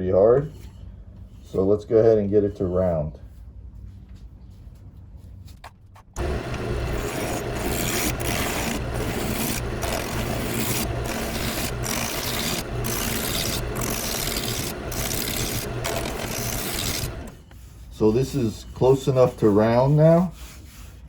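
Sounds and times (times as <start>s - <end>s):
wood lathe motor hum: 6.2s - 17.4s
gouge scraping wood: 6.2s - 17.8s, 18.8s - 21.0s.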